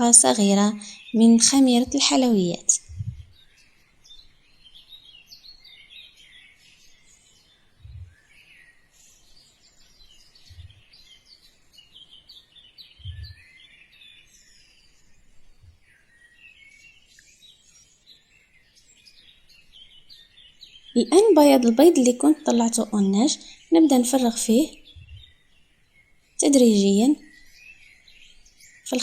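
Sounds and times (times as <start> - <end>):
small birds twittering: 0.0 - 29.0
soft low thumps: 2.8 - 3.4, 7.8 - 8.2, 10.5 - 10.8, 13.0 - 13.4, 25.0 - 25.3.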